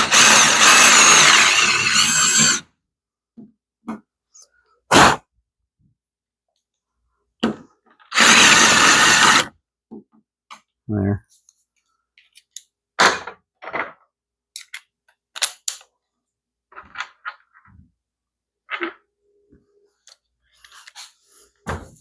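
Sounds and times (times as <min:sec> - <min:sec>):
power drill running: 0:00.0 - 0:02.6, 0:08.1 - 0:09.5.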